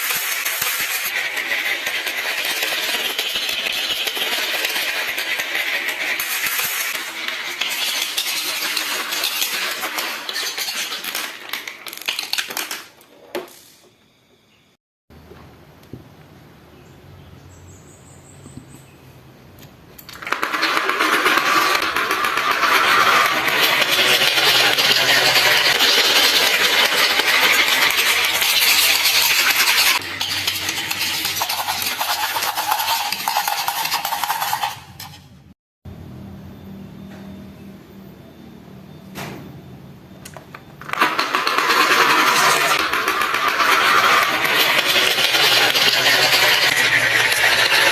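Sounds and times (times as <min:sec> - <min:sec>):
marbles clattering down wooden run: 0:00.0 - 0:12.9, 0:20.1 - 0:34.8, 0:40.8 - 0:47.9.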